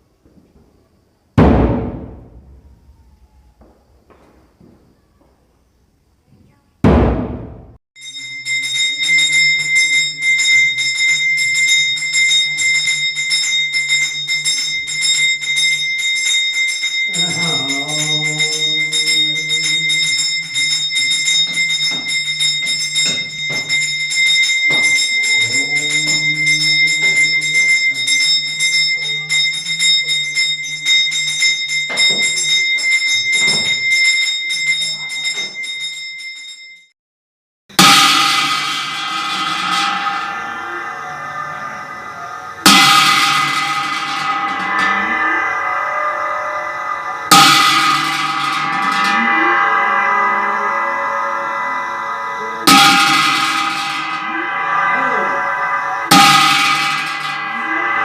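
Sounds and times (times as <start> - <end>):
hand bell ringing rapidly: 8.0 - 36.8
low rising and falling tone: 39.1 - 58.0.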